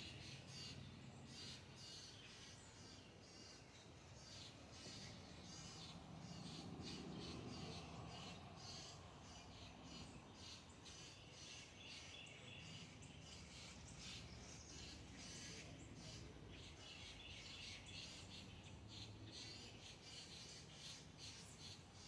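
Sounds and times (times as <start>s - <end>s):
low background noise: 0.0s - 22.0s.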